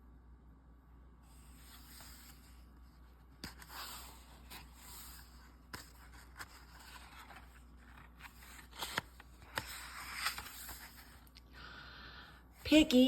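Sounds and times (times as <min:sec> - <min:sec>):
book pages rustling: 0:01.3 - 0:11.5.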